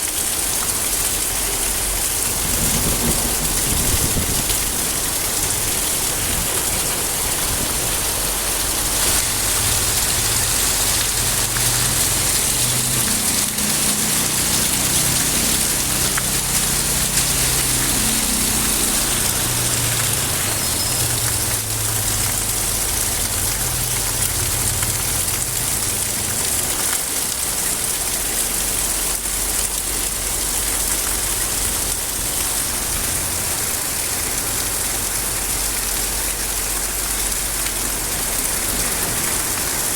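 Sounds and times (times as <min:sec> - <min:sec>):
heavy rain falling: 0:00.0 - 0:39.9
low rumble: 0:07.2 - 0:26.6.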